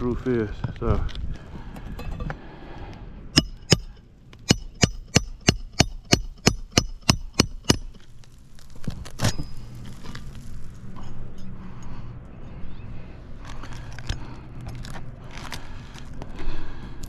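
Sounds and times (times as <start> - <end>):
hammer striking nail: 3.4 - 8.0.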